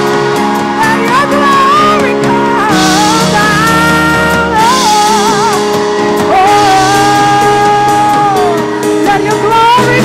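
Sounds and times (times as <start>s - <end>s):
worship band with guitar and drums: 0.0s - 10.0s
person singing long wavering notes: 6.3s - 8.7s.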